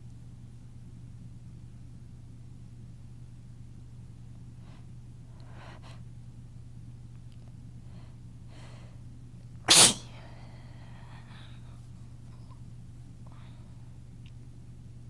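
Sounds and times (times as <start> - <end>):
person sneezing: 9.7 - 10.2.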